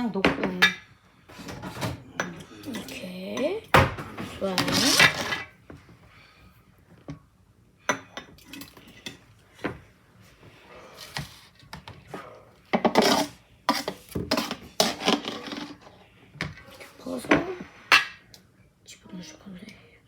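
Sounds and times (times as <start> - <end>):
ladle scraping a bowl: 4.3 - 5.5, 12.9 - 15.9.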